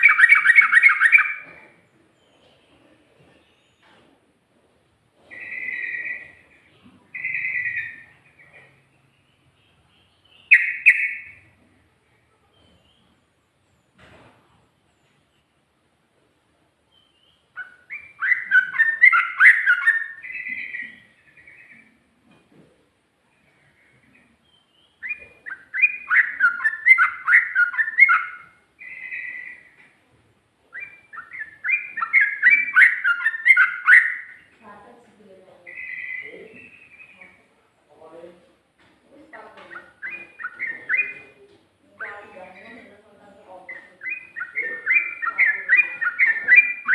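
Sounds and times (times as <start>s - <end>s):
bird singing whistled phrases: 0.0s - 1.5s, 5.3s - 6.4s, 7.1s - 8.6s, 10.3s - 11.4s, 16.9s - 21.9s, 24.5s - 29.8s, 30.7s - 34.5s, 35.7s - 37.4s, 39.7s - 41.4s, 43.6s - 46.9s.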